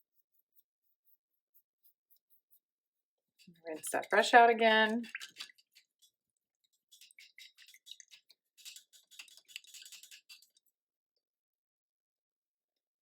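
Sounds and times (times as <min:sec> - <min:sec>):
brush swishing in water: 0:03.4 - 0:10.8.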